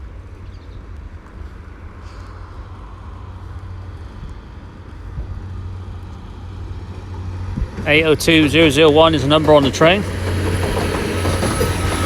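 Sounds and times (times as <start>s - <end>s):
train engine rumble: 0.0s - 12.0s
hiss of train wheels: 9.9s - 12.0s.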